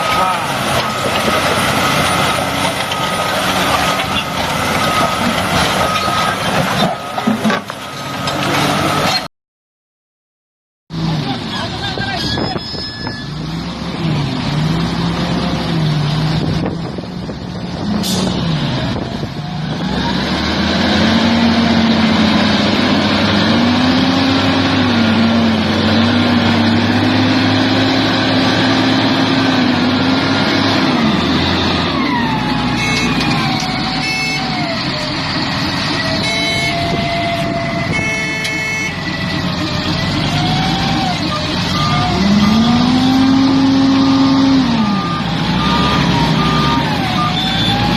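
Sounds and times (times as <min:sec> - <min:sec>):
diesel machinery engine revving: 0:13.3 - 0:47.9.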